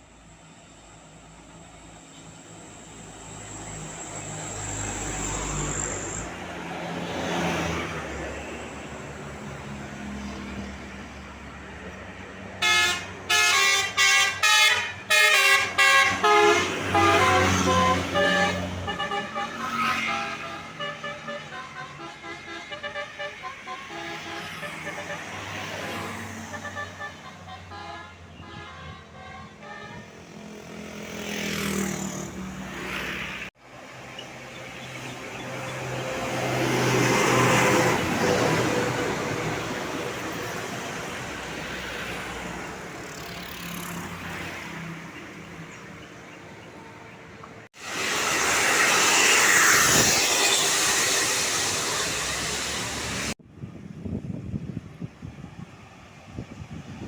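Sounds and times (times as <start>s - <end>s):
bus passing: 0.0s - 57.0s
bus musical horn tune: 12.6s - 30.3s.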